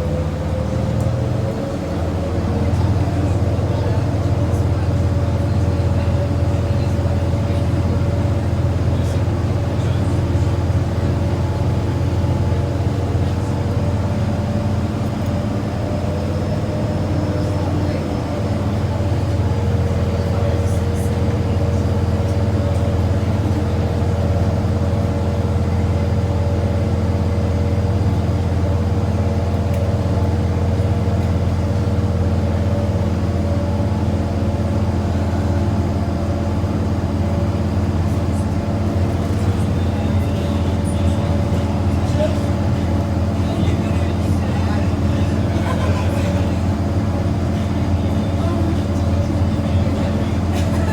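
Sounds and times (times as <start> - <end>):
boat engine droning: 0.0 - 50.9.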